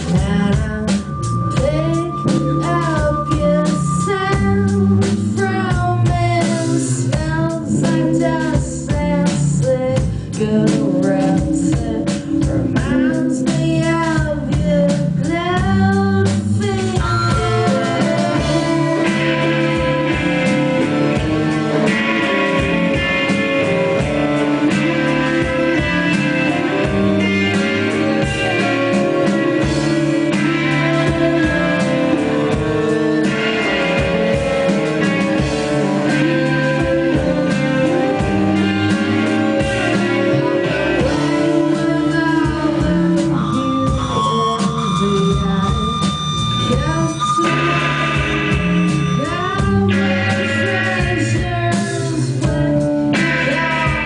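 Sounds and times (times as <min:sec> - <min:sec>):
guitars playing: 0:00.0 - 0:54.0
person singing: 0:00.0 - 0:54.0.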